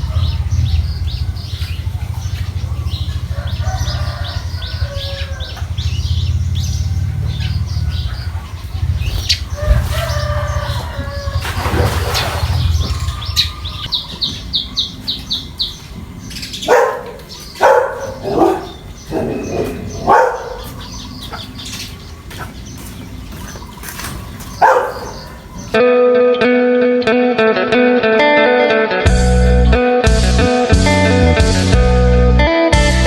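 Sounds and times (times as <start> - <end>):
birds chirping: 0.0 - 26.2
guitar music: 25.6 - 33.0.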